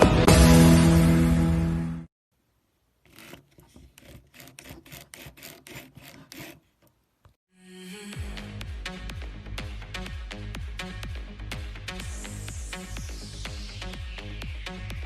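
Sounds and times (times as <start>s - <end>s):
music track: 0.0s - 2.1s
quick rasping rubbing strokes: 3.0s - 7.0s.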